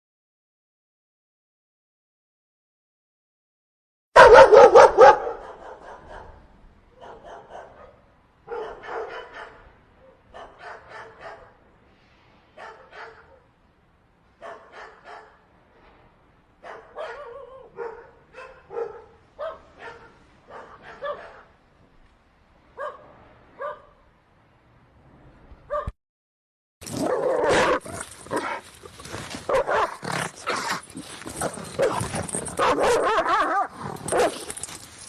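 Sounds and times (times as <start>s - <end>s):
dog barking and yipping: 4.2s - 6.4s, 7.0s - 11.6s, 12.6s - 13.5s, 14.4s - 15.4s, 16.6s - 21.5s, 22.8s - 23.0s, 23.6s - 24.0s, 25.7s - 25.9s, 26.8s - 34.9s.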